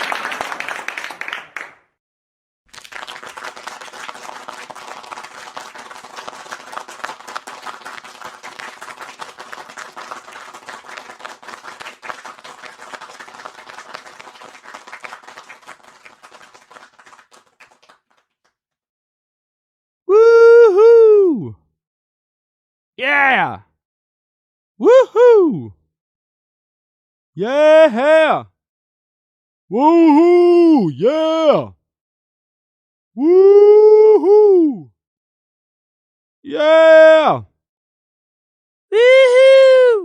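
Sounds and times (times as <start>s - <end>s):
audience applause: 0.0s - 1.8s, 2.7s - 18.3s.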